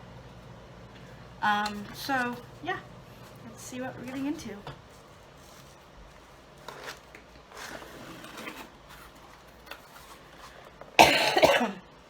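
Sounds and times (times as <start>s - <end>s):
packaging rustling: 5.0s - 11.0s.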